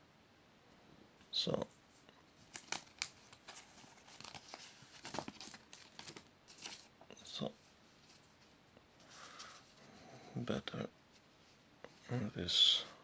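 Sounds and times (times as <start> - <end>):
banknotes crinkling and rustling: 1.9 - 9.7.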